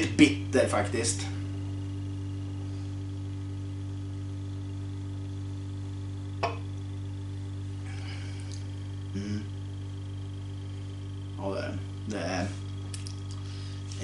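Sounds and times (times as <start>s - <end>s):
heat pump humming: 0.0s - 14.0s
sharp knock: 6.4s - 6.6s.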